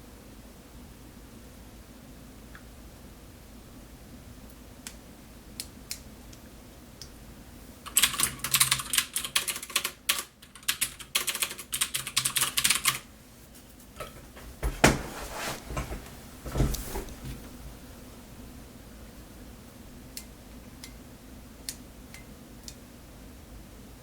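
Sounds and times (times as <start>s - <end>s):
keyboard typing: 7.9s - 13.0s.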